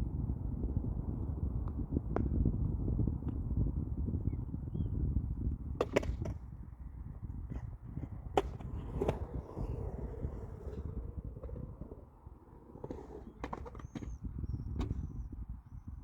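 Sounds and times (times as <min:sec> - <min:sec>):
skateboard wheels rolling on pavement: 0:00.2 - 0:16.0
skateboard clacks: 0:05.3 - 0:15.4.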